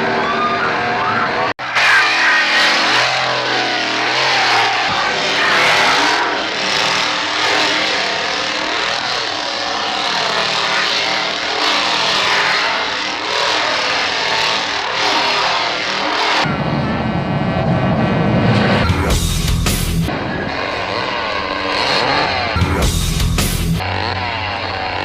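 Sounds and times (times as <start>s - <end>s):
heavy metal music: 0.0s - 25.0s
chainsaw revving: 1.6s - 16.5s, 19.0s - 25.0s.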